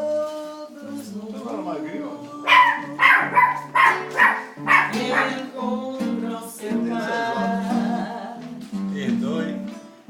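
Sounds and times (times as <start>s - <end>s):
song playing: 2.3s - 6.2s
dog barking: 2.4s - 5.5s.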